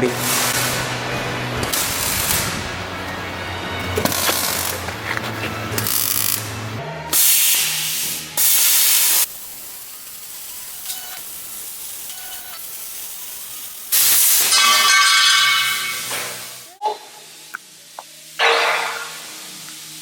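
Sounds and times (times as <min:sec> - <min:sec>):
loud hissing from metalworking: 0:07.1 - 0:20.0.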